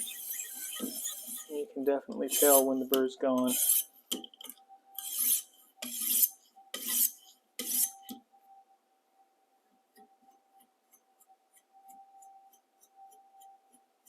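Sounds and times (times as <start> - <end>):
sharpening stone rasping on knife: 0.0 - 1.5, 2.3 - 2.7, 3.5 - 3.9, 5.0 - 8.1.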